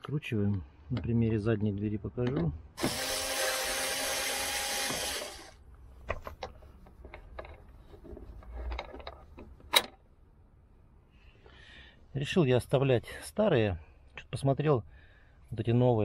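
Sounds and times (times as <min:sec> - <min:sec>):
power drill-driver running: 0:02.8 - 0:05.6.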